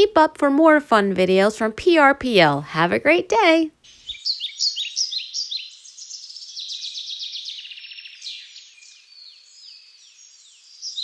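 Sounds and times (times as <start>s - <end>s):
bird trill: 3.8s - 11.0s
birds chirping and whistling: 3.9s - 11.0s.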